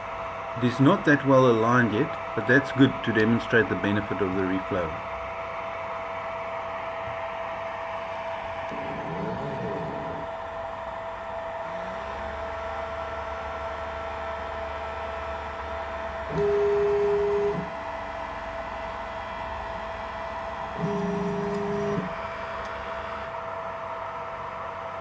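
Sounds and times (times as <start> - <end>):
background hum: 0.4 - 13.7
stepper motors whining: 8.0 - 17.8, 20.6 - 23.3.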